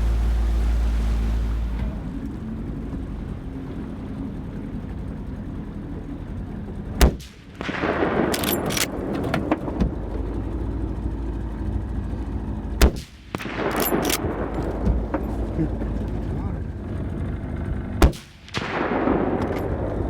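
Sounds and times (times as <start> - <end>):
engine humming: 0.0 - 20.0
rifle shots: 12.8 - 14.4.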